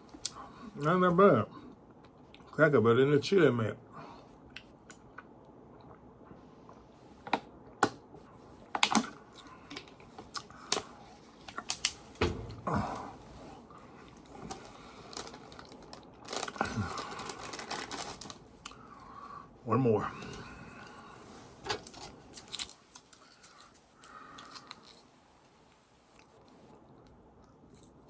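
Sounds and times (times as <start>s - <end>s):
cracker crunching: 8.9s - 19.0s, 21.7s - 25.1s.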